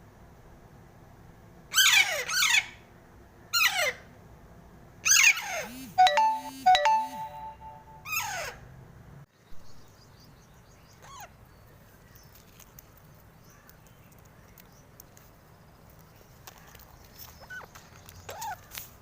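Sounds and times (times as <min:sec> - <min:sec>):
parrot squawking: 0:01.7 - 0:02.8, 0:05.0 - 0:05.7, 0:08.0 - 0:08.5.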